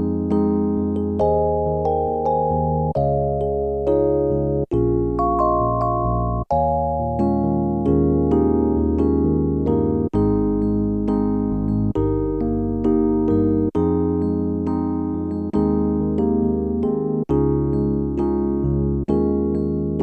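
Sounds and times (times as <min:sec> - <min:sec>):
electric piano chords: 0:00.0 - 0:20.0.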